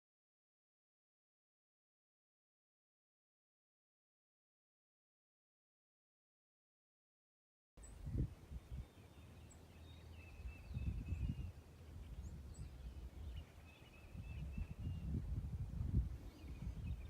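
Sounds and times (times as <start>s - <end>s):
small birds chirping: 7.8s - 17.0s
wind buffeting microphone: 7.8s - 17.0s.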